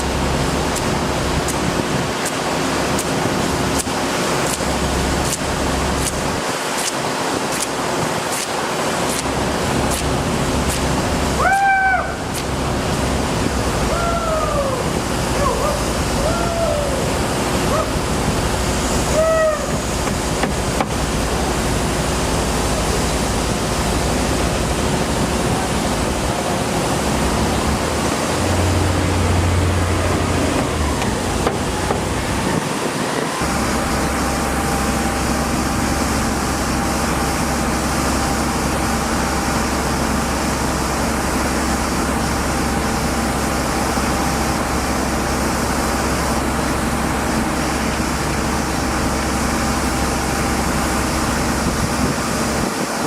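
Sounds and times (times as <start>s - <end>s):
low engine drone: 0.0s - 53.0s
road traffic: 0.0s - 53.0s
steady low hum: 0.0s - 53.0s.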